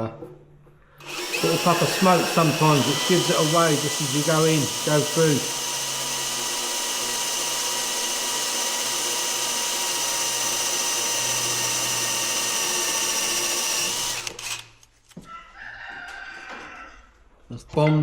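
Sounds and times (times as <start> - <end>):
power drill boring through wood: 1.0 - 14.8.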